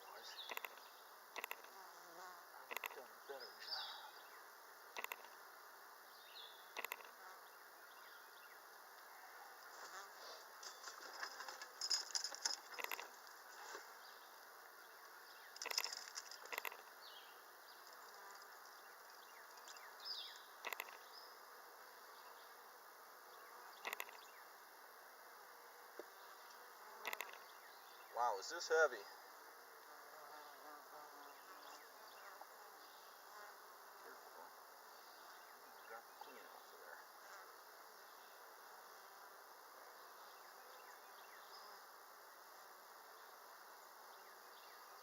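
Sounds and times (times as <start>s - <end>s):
short clicks and knocks: 2.7s - 3.0s, 6.8s - 7.2s.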